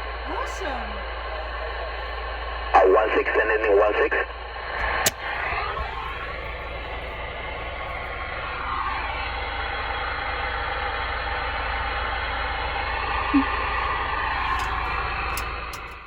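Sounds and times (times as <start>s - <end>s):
radio static hiss: 0.0s - 9.3s.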